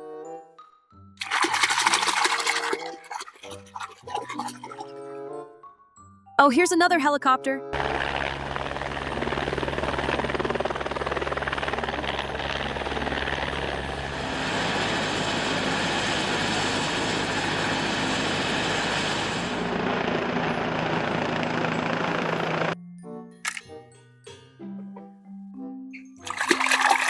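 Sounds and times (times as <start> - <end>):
helicopter rotor and engine: 7.7 - 22.8.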